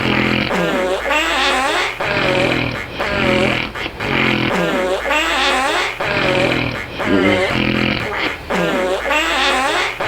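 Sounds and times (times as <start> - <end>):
buzzy flapping snore: 6.2 - 8.7.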